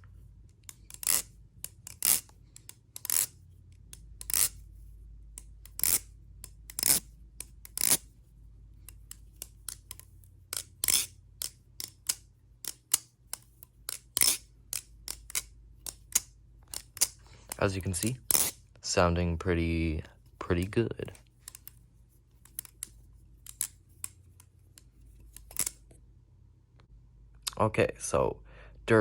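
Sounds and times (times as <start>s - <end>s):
butterfly knife clicking: 0.5s - 4.6s, 5.4s - 8.1s, 8.8s - 18.6s, 22.4s - 25.8s.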